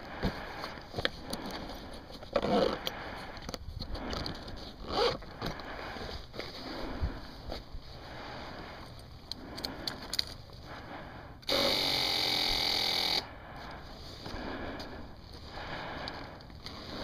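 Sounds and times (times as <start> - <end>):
handling clicks and rustling: 8.8 - 10.6
electric starter cranking: 11.5 - 13.3.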